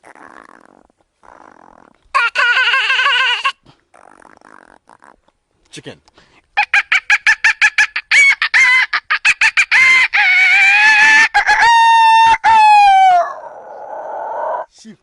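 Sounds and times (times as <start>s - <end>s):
boy imitating a chicken: 2.2s - 3.6s, 6.6s - 13.4s.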